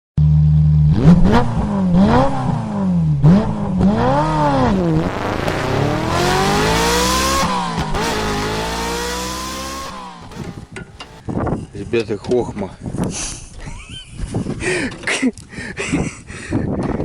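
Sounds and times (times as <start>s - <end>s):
car engine revving: 0.8s - 11.2s.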